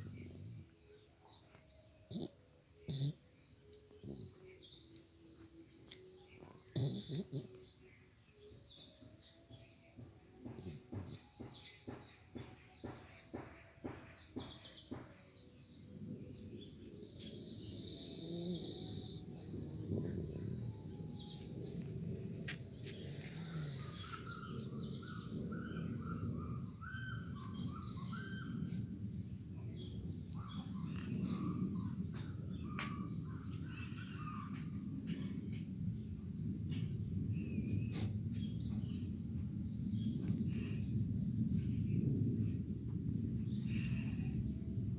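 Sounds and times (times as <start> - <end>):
high insect chirring: 0.0 - 34.4.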